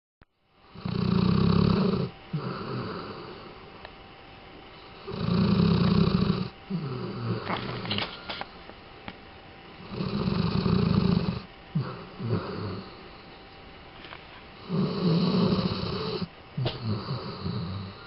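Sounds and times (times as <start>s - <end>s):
dog snoring: 0.6s - 3.6s, 4.8s - 8.2s, 9.8s - 13.2s, 14.6s - 18.0s.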